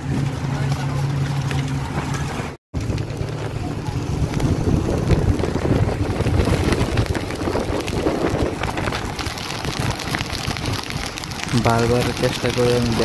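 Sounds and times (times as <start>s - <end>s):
moving vehicle rumble: 0.0s - 13.0s
wind buffeting microphone: 0.0s - 13.0s.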